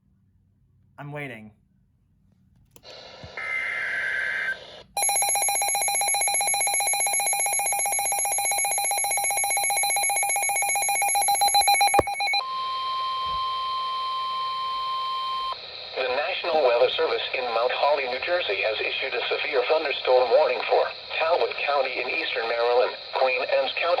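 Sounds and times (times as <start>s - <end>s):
electronic alarm pulsing: 3.4s - 15.6s
steady alarm tone: 3.4s - 15.6s.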